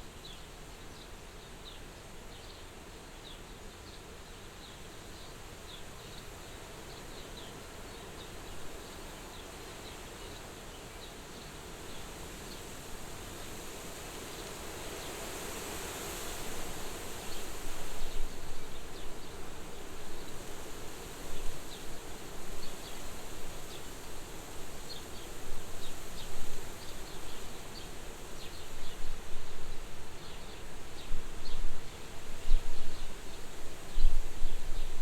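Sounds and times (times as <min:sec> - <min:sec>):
wind gusting at a window: 0:15.2 - 0:35.0.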